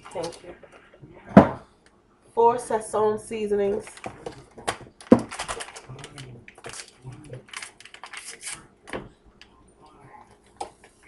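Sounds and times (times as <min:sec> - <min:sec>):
seasoning packets crinkling and tearing: 0:05.0 - 0:08.6.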